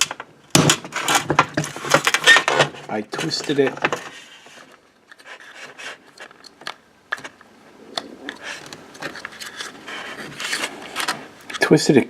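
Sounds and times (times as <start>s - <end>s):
hard plastic parts clicking: 6.1s - 11.8s.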